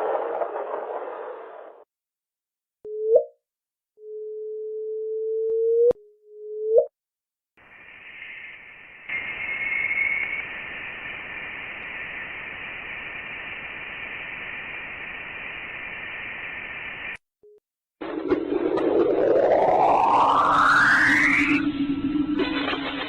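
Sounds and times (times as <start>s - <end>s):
radio static hiss with whistle: 7.6s - 17.2s
tone rising in pitch: 18.5s - 22.4s.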